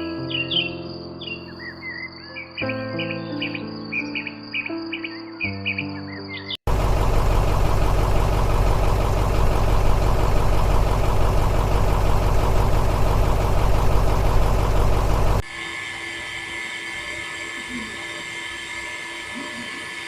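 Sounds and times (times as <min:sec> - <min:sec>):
tractor engine idling: 0:06.7 - 0:15.4.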